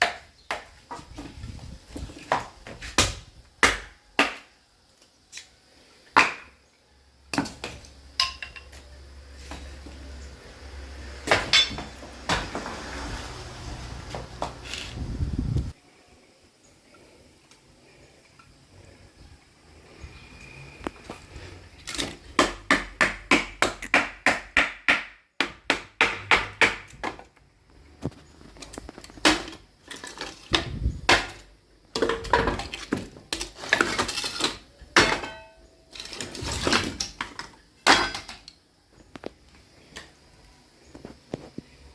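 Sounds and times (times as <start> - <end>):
sledgehammer striking steel chisel: 11.3 - 12.4.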